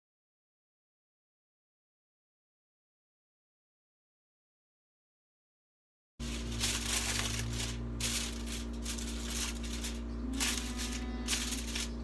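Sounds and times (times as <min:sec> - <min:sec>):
low electrical hum: 0:06.2 - 0:12.0
rustling handling noise: 0:06.2 - 0:12.0.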